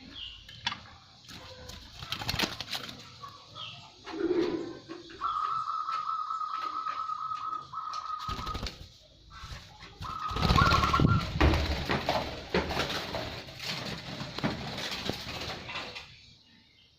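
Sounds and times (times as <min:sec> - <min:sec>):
dove cooing: 0:04.0 - 0:08.8
rustling with clicks and knocks: 0:04.0 - 0:16.2.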